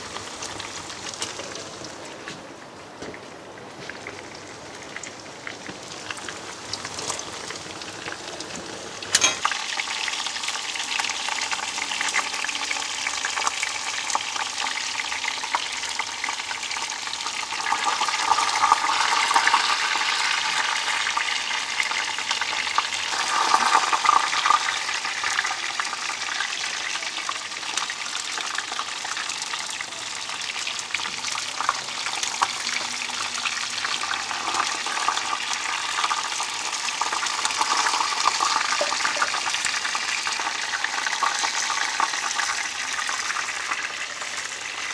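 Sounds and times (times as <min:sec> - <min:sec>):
fries sizzling in hot oil: 0:00.0 - 0:02.4, 0:03.0 - 0:44.9.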